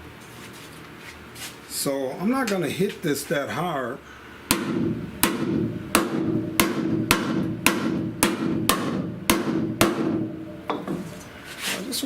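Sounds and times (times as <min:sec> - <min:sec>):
hammer tapping steel panel: 0:04.5 - 0:11.1.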